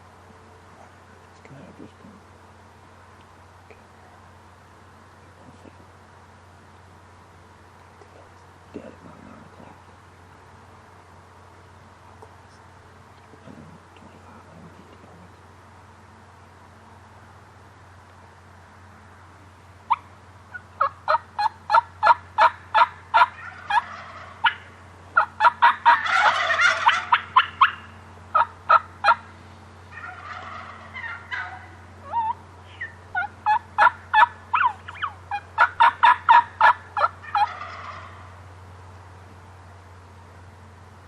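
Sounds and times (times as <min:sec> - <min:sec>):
turkey yelps: 0:19.9 - 0:29.3, 0:29.9 - 0:38.3
turkey rattling gobbles: 0:22.4 - 0:24.6, 0:25.2 - 0:28.4, 0:29.9 - 0:32.3, 0:33.4 - 0:38.2.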